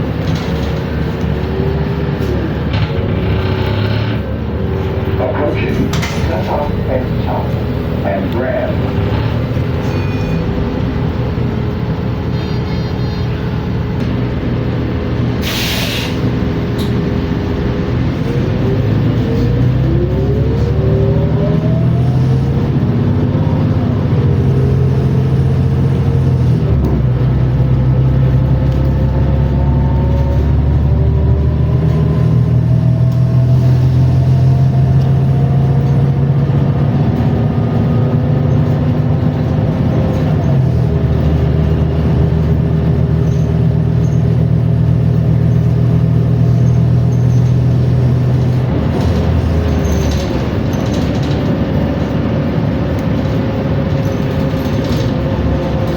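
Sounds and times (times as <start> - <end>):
bus drivetrain drone: 0.0 - 55.9.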